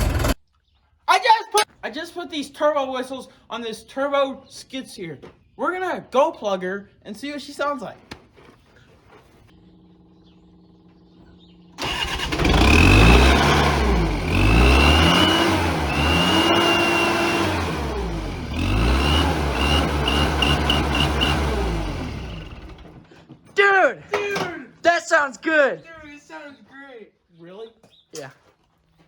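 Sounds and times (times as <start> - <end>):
loader engine revving: 0.0 - 0.4, 9.8 - 23.1.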